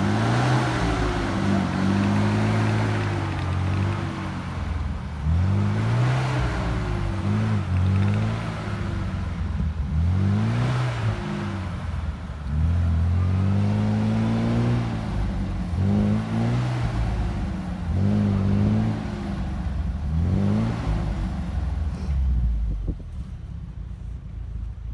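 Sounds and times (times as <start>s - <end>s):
vehicle engine revving: 0.0s - 22.9s.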